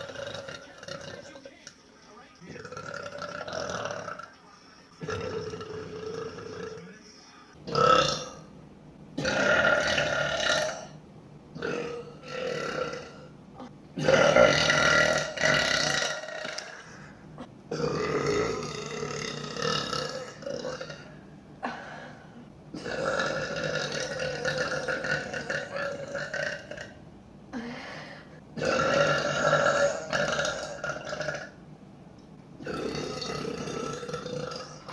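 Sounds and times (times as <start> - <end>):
woman belching: 0.0 - 1.3, 2.6 - 4.3, 5.0 - 6.8, 7.7 - 8.4, 9.2 - 11.0, 11.6 - 16.9, 17.7 - 22.1, 22.8 - 27.0, 28.6 - 31.6, 32.6 - 34.9.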